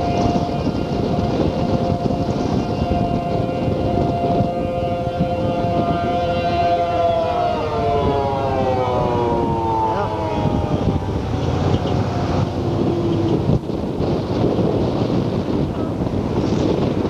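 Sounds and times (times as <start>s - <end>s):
siren winding down: 0.0s - 13.5s
wind noise on microphone: 0.0s - 17.0s.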